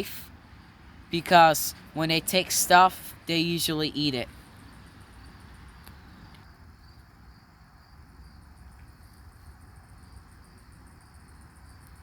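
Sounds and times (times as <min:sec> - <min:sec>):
low outdoor background noise: 0:00.0 - 0:12.0
insect chirping trill: 0:04.0 - 0:12.0.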